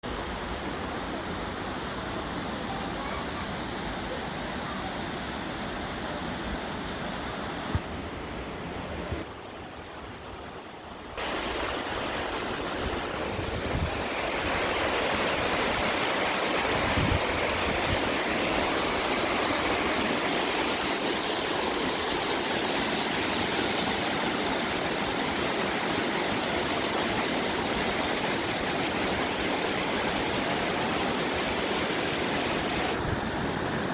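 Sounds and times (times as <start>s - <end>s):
waterfall rushing: 11.1s - 33.9s.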